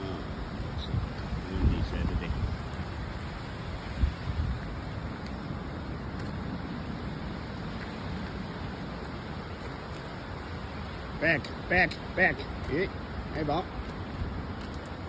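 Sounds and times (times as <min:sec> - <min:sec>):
wind on microphone: 0:00.0 - 0:10.2.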